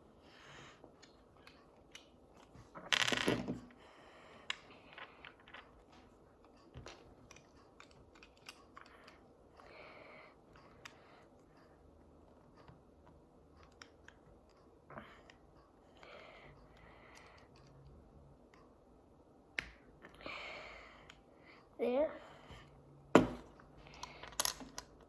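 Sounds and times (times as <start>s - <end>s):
plastic toy parts clicking: 6.8s - 9.2s, 23.9s - 25.0s.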